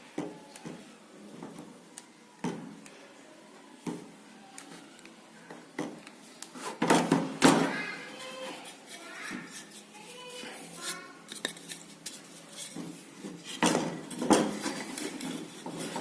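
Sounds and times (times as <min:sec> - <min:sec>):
hard objects knocking and clattering: 0:12.6 - 0:16.0.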